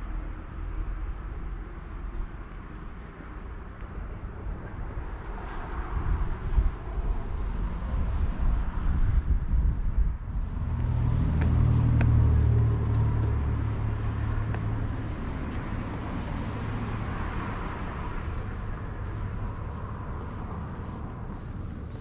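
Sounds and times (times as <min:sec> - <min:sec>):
outdoor background noise: 0:00.0 - 0:22.0
motor vehicle passing: 0:10.3 - 0:22.0.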